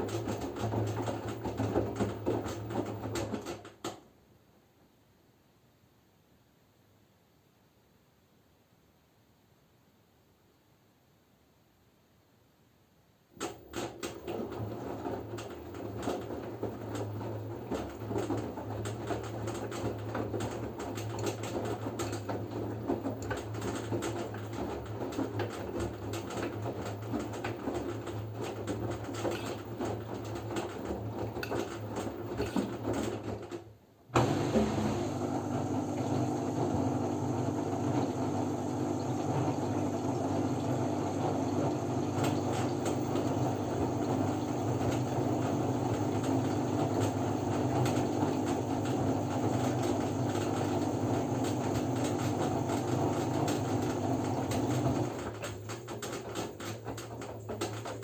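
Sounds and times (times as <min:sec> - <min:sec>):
washing machine motor humming: 0:00.0 - 0:03.9, 0:13.4 - 0:58.0.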